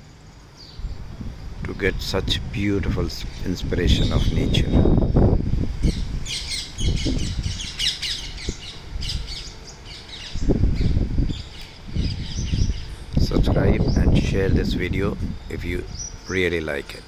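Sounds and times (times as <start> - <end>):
birds calling: 0.0 - 17.0.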